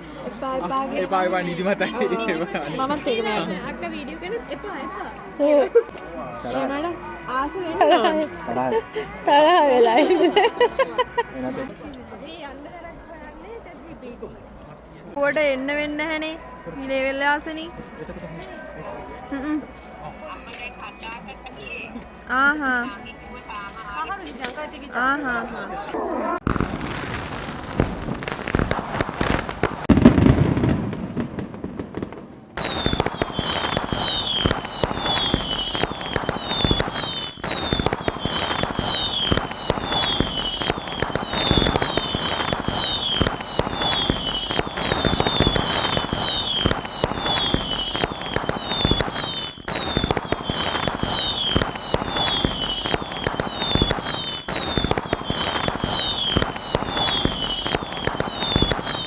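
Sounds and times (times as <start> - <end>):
firework crackling: 0.0 - 59.0
firework boom: 26.4 - 59.0
firework falling whistles: 26.4 - 59.0.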